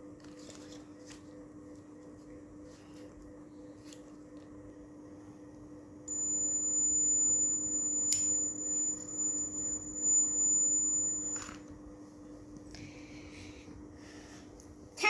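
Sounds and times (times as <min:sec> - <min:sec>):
high-pitched alarm buzzer: 0:06.1 - 0:11.6
click: 0:08.1 - 0:08.3.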